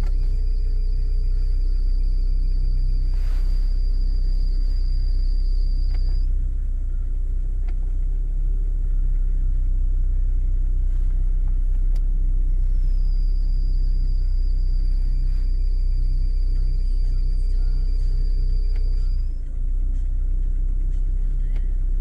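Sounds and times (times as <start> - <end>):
drive belt whistle: 0.0 - 6.3, 12.5 - 19.5
car engine idling: 0.0 - 22.0.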